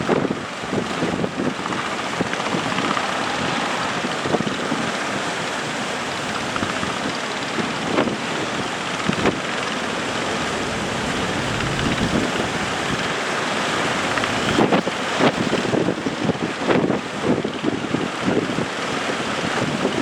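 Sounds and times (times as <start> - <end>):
surf and waves: 0.0 - 20.0
wind buffeting microphone: 0.0 - 20.0
sudden thumps: 10.0 - 13.0.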